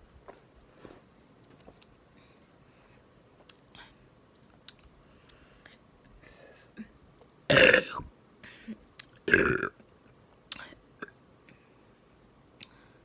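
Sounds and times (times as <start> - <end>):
woman burping: 7.5 - 8.0, 9.3 - 9.7.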